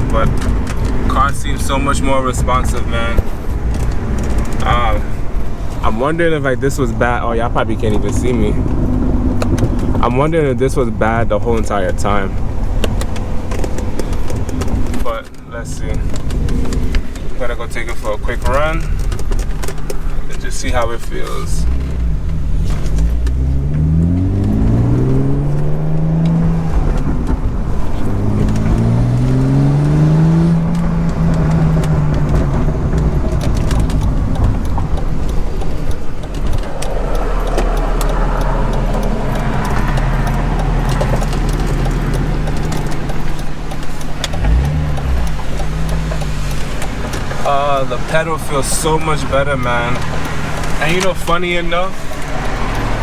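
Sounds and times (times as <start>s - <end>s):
car engine accelerating hard: 0.0s - 53.0s
road drone: 0.0s - 53.0s.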